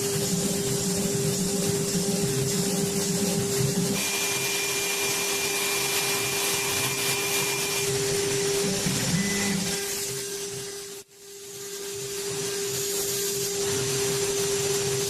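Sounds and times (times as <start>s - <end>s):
hissing vacuum-like noise: 0.0s - 15.0s
cnc router spindle whine: 3.4s - 12.7s.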